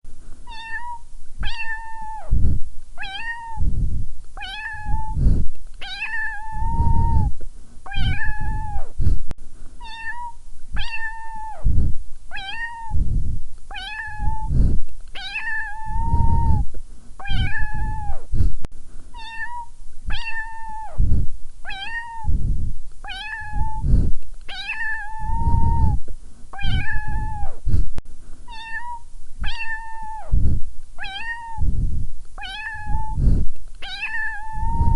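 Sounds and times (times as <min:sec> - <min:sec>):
kitten meowing: 0:00.5 - 0:02.3, 0:03.0 - 0:03.6, 0:04.4 - 0:05.2, 0:05.8 - 0:07.3, 0:07.9 - 0:08.9, 0:09.8 - 0:11.6, 0:12.3 - 0:13.0, 0:13.7 - 0:14.5, 0:15.2 - 0:16.6, 0:17.2 - 0:18.2, 0:19.2 - 0:21.0, 0:21.6 - 0:22.3, 0:23.1 - 0:23.9, 0:24.5 - 0:26.0, 0:26.6 - 0:27.6, 0:28.5 - 0:30.4, 0:31.0 - 0:31.6, 0:32.4 - 0:33.2, 0:33.8 - 0:34.9.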